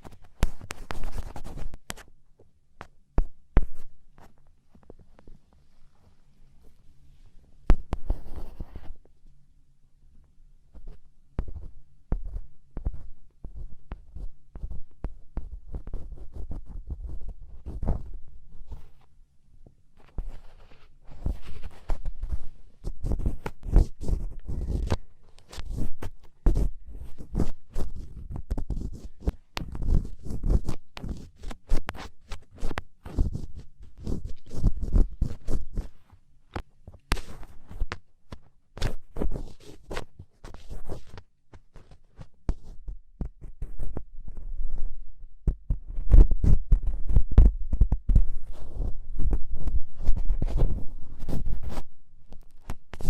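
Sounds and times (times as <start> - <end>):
ear pick scraping earwax: 20.0 - 36.0.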